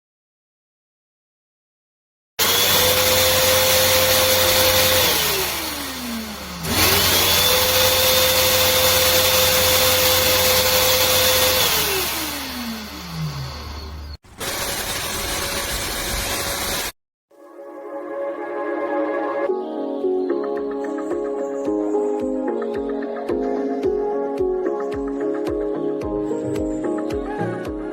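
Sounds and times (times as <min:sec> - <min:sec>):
snow machine blower whine: 0:02.4 - 0:17.0.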